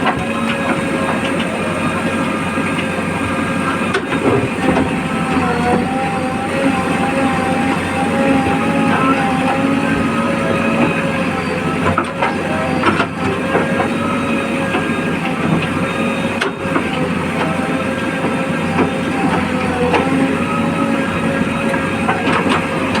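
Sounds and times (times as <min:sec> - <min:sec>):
diesel machinery running: 0:00.0 - 0:23.0.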